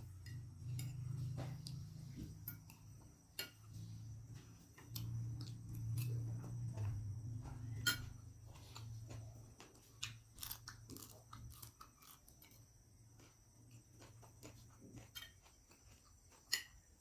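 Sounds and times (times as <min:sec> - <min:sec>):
chewing food: 0:04.8 - 0:17.0.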